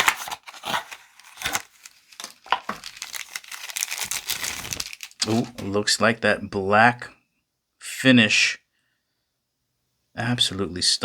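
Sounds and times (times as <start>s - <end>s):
packaging crinkling: 0.0s - 5.7s.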